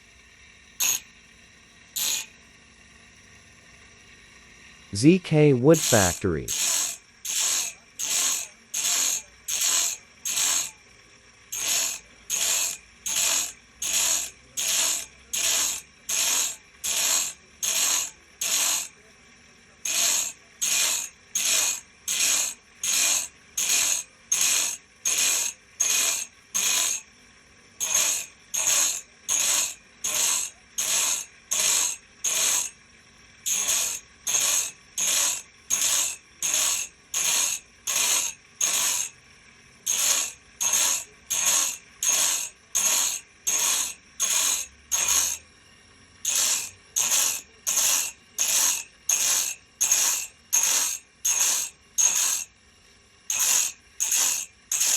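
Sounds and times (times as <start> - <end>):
file rasping on saw teeth: 0.8 - 1.0, 2.0 - 2.3, 6.5 - 10.8, 11.5 - 18.9, 19.9 - 27.0, 27.8 - 32.8, 33.5 - 39.1, 39.9 - 45.4, 46.3 - 52.5, 53.3 - 54.9.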